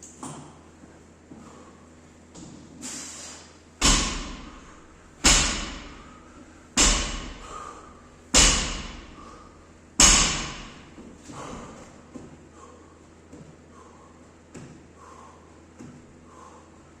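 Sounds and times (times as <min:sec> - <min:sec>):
heavy gym equipment thuds on floor: 0:03.8 - 0:06.2, 0:06.8 - 0:07.6, 0:08.3 - 0:09.2, 0:10.0 - 0:12.4.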